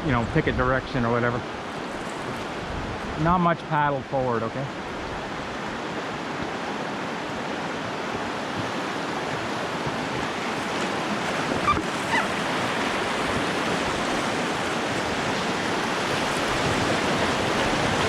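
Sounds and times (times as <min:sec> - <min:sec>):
whitewater rapids rushing: 0:04.7 - 0:18.0.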